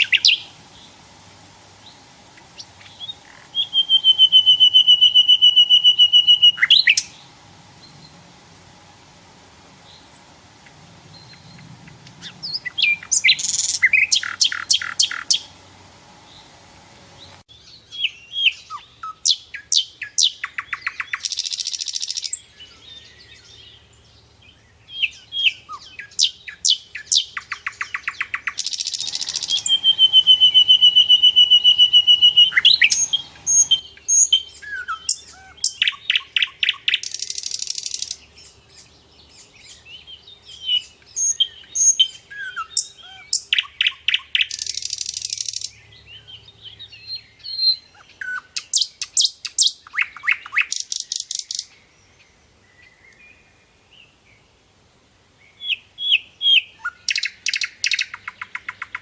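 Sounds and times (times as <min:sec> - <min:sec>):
long held bird whistle: 0:00.0 - 0:00.6, 0:02.6 - 0:07.3, 0:12.2 - 0:15.5, 0:17.5 - 0:23.6, 0:24.9 - 0:38.9, 0:39.6 - 0:51.8, 0:55.6 - 0:59.0
nightingale singing: 0:00.0 - 0:08.3, 0:09.8 - 0:15.6, 0:16.2 - 0:54.5, 0:55.4 - 0:59.0.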